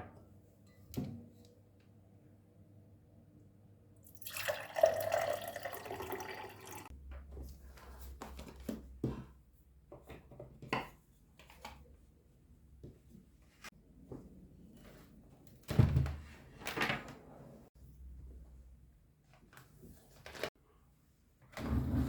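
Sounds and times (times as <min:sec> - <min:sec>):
water running from tap: 0:04.1 - 0:06.9.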